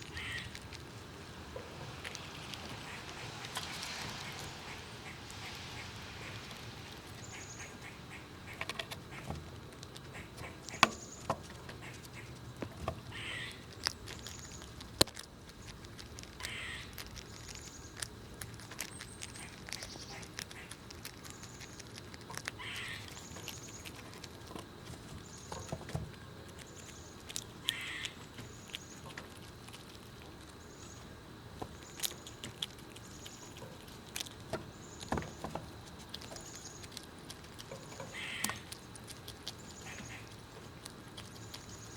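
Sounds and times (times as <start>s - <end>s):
bird calling: 0.0s - 0.6s, 2.1s - 6.5s, 7.2s - 9.3s, 13.0s - 14.7s, 16.4s - 18.0s, 22.4s - 23.9s, 26.6s - 29.0s, 37.7s - 38.8s, 39.6s - 40.4s
squirrels cracking nut shells: 0.0s - 41.9s.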